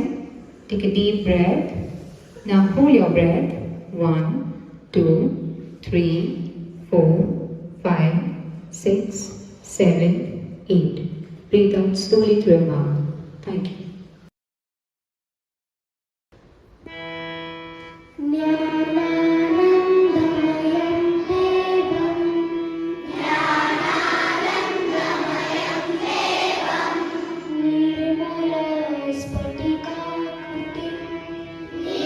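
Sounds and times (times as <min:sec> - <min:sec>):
children singing in chorus: 0:23.0 - 0:27.8, 0:31.7 - 0:32.0.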